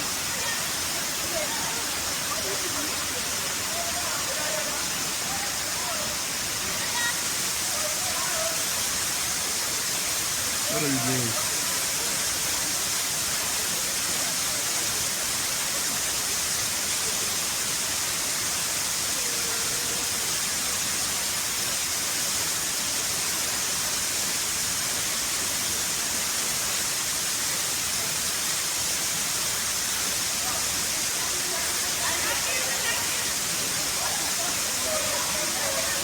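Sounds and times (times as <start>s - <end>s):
waterfall rushing: 0.0s - 36.0s.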